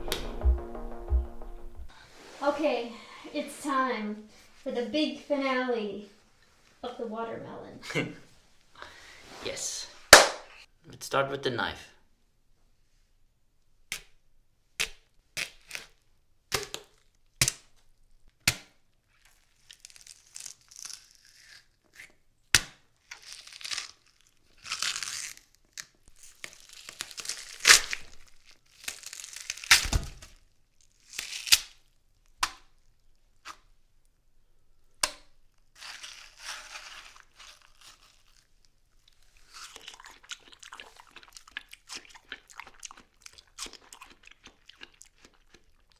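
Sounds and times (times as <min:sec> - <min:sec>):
crunching tearing of melon: 0:19.2 - 0:31.9, 0:35.7 - 0:45.9
knife stabbing watermelon: 0:35.8 - 0:38.0.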